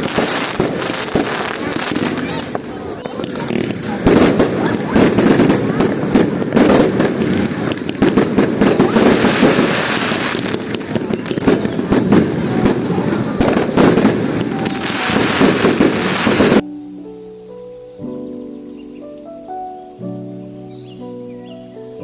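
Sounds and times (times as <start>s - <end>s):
fireworks popping and banging: 0.0s - 16.6s
soft music: 0.0s - 22.0s.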